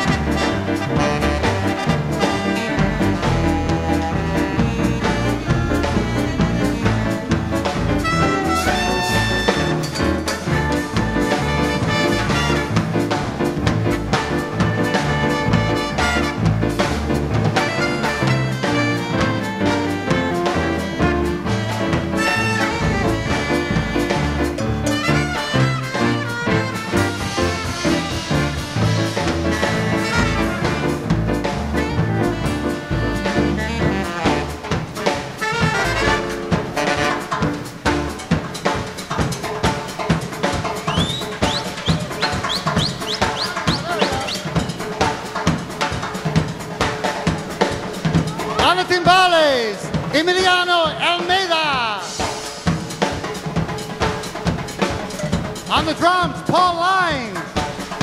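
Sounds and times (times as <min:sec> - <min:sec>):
saxophone: 0:00.0 - 0:37.9
bass: 0:00.0 - 0:58.0
dance band playing latin swing: 0:00.0 - 0:58.0
drums and timbales beat: 0:00.0 - 0:58.0
trombone: 0:00.0 - 0:58.0
trumpet: 0:00.0 - 0:58.0.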